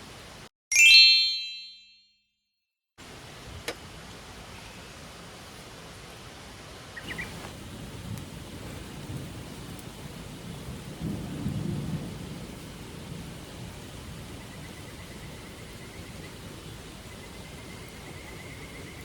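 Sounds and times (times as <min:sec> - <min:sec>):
steady rain: 0:00.0 - 0:00.5, 0:03.0 - 0:19.0
high chirp: 0:00.7 - 0:02.2
thunder rumbling: 0:07.1 - 0:19.0.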